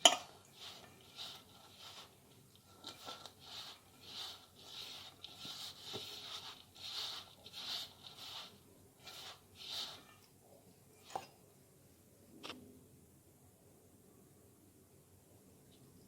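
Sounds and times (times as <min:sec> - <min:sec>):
hands kneading dough: 0:00.0 - 0:10.3.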